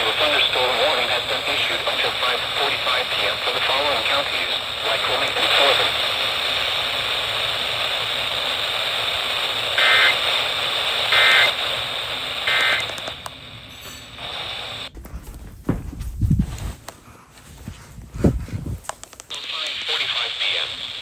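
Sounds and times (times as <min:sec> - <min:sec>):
radio static hiss: 0:00.0 - 0:13.4, 0:14.2 - 0:15.0, 0:19.0 - 0:21.0
warbling data bursts: 0:09.7 - 0:10.2, 0:11.1 - 0:11.6.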